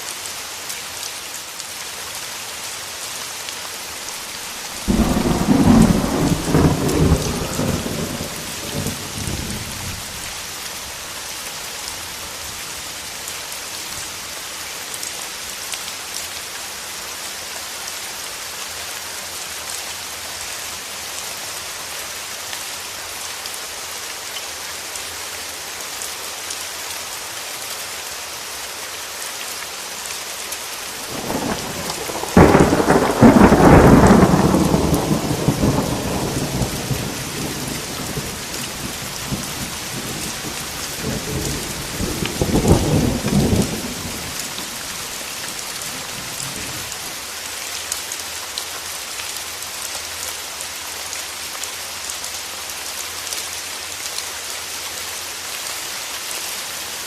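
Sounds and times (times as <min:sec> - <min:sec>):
steady rain falling: 0:00.0 - 0:57.0
thunder rolling: 0:04.8 - 0:09.9, 0:31.1 - 0:44.8.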